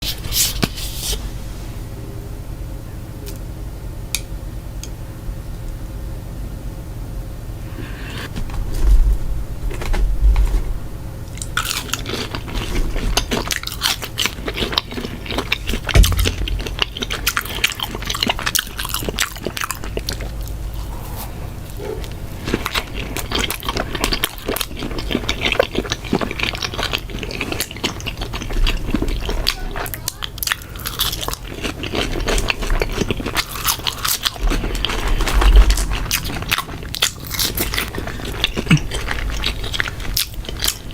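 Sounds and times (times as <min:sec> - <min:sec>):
biting and chewing: 0:11.3 - 0:40.9
low thumps: 0:15.8 - 0:17.4.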